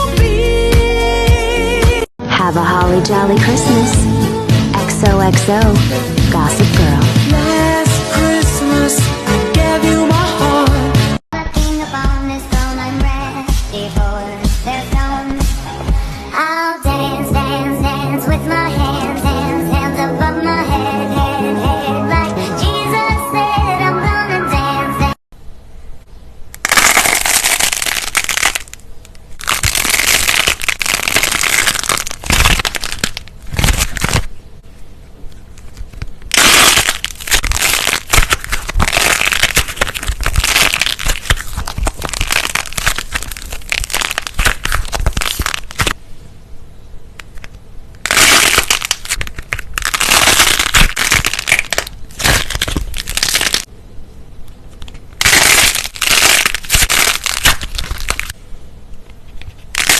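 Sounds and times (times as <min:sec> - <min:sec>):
brittle crunching and crackling: 0:26.6 - 0:34.3, 0:35.6 - 0:46.0, 0:48.0 - 0:53.7, 0:54.8 - 0:58.4, 0:59.4 - 0:59.9.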